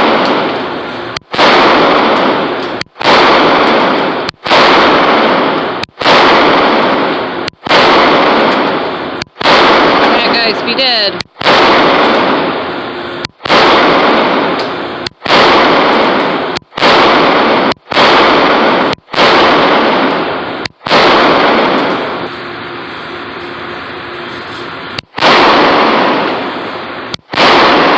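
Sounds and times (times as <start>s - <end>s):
pistol shots echoing indoors: 0.0s - 27.9s.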